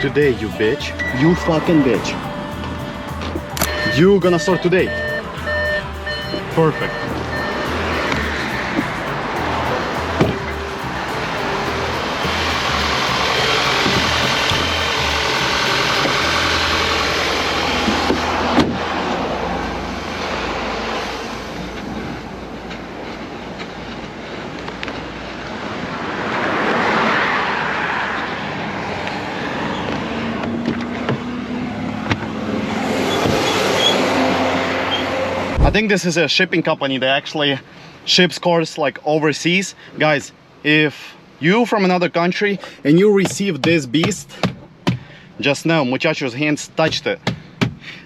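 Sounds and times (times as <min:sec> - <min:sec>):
vehicle engine running: 0:00.0 - 0:25.6.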